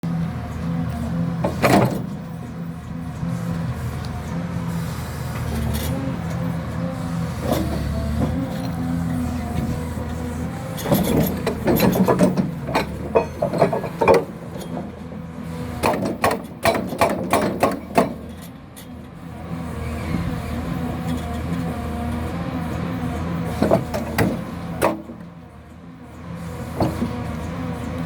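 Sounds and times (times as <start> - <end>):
diesel engine droning: 0.0 - 28.0
hydraulic breaker hammering: 15.8 - 18.3, 23.6 - 25.2.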